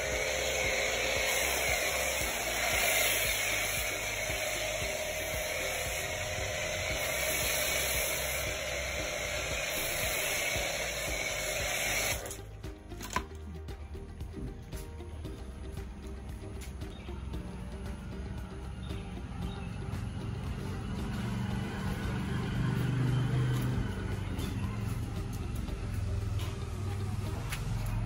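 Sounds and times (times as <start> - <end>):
pressure washer spraying water: 0.0 - 12.5.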